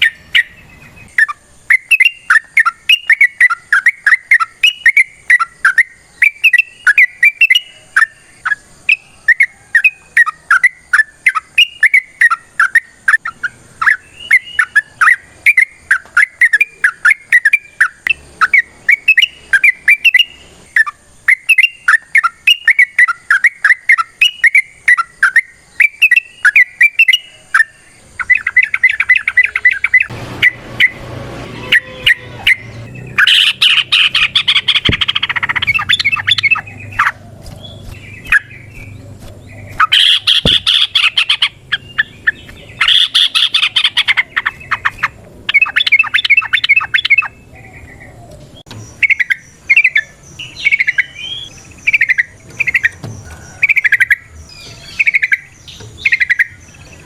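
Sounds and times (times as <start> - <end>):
bird chirping rapidly: 0.0 - 57.0
rough noise: 29.8 - 42.9.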